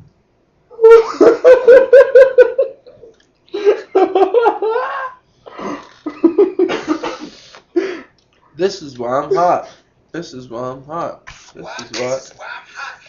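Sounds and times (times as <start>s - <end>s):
hearty laughter: 0.8s - 3.0s, 3.6s - 5.2s, 6.0s - 7.0s.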